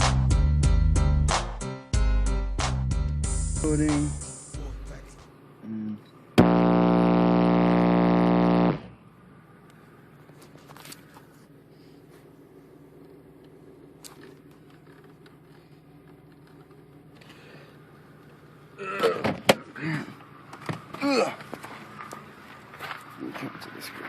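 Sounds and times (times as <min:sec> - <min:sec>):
faint background hum: 0:03.6 - 0:24.0
subwoofer bass buzzing low tone: 0:06.4 - 0:09.0.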